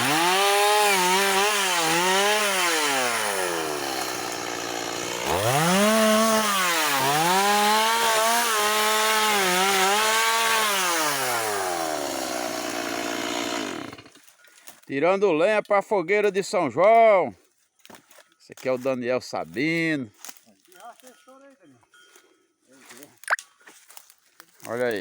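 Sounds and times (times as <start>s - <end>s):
chainsaw revving: 0.0s - 14.1s.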